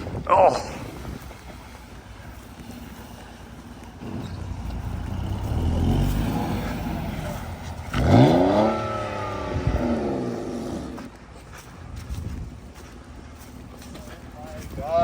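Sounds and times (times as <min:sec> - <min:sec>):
tires spinning: 0:00.0 - 0:15.0
car engine revving: 0:01.6 - 0:11.2.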